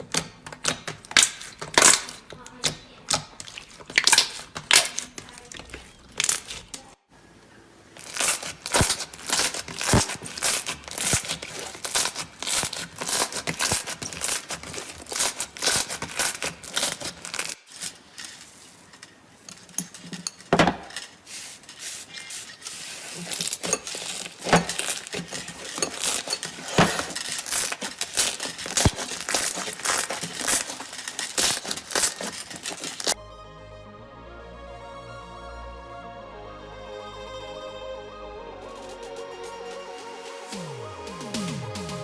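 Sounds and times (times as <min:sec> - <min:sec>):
slime crackling and popping: 0:00.0 - 0:02.3, 0:03.4 - 0:06.8, 0:08.0 - 0:18.0, 0:23.0 - 0:33.2.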